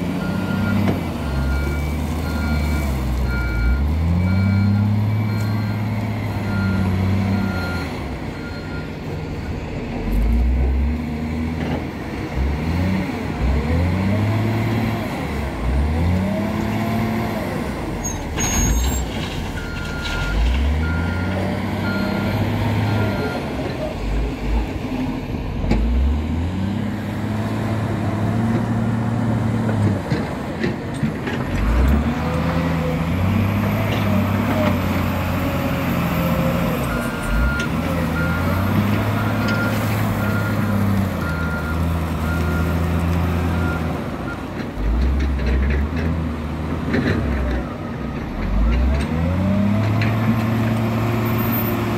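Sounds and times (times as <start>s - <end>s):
wheel loader diesel engine revving: 0.0s - 18.5s, 19.2s - 51.9s
reversing alarm beeping: 0.2s - 9.6s, 19.6s - 23.5s.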